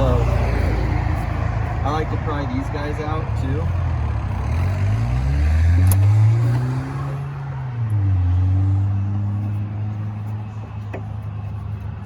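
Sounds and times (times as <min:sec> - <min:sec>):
vehicle engine humming: 0:00.0 - 0:12.0
sharp click: 0:05.8 - 0:06.6.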